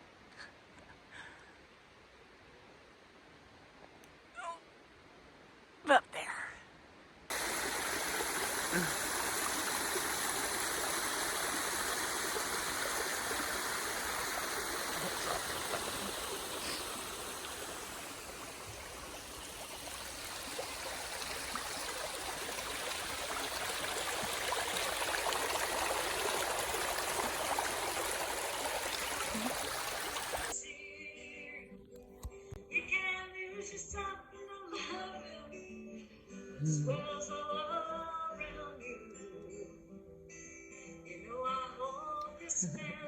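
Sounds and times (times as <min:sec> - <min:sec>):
running water rushing: 0:07.3 - 0:30.6.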